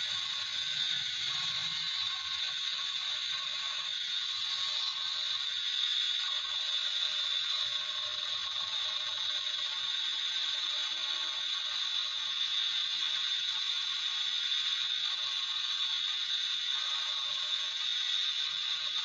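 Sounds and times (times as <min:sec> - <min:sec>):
metalworking machine rattle and hiss: 0:00.0 - 0:19.0.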